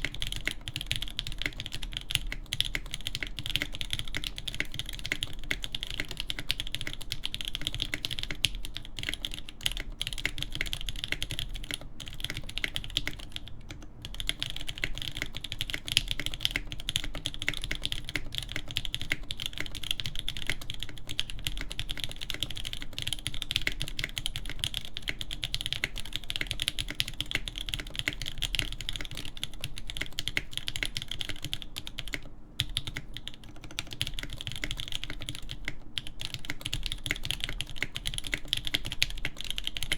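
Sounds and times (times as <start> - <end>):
fast mechanical keyboard typing: 0.0 - 39.9.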